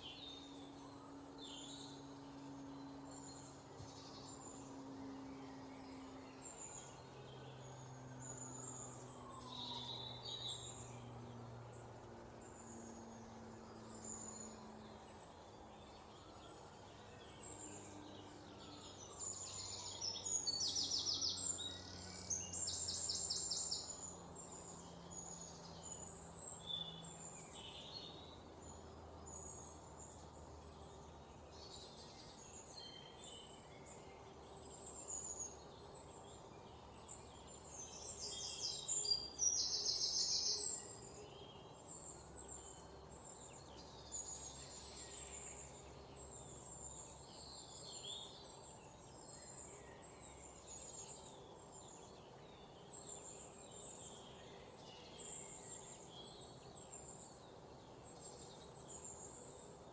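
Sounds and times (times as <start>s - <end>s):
faint background hiss: 0.0s - 59.9s
songbirds chirping: 0.0s - 59.9s.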